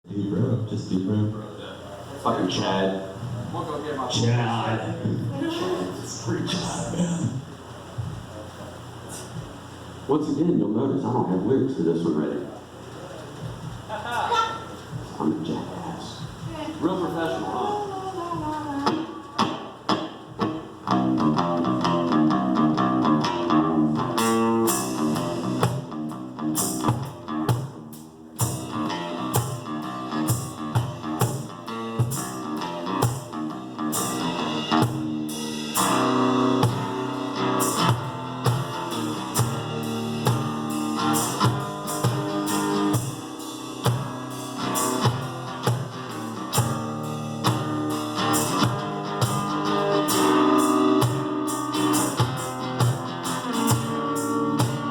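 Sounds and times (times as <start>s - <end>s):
drums keeping a steady beat: 1.8s - 10.1s, 12.6s - 54.9s
guitar picking a riff: 16.4s - 54.9s.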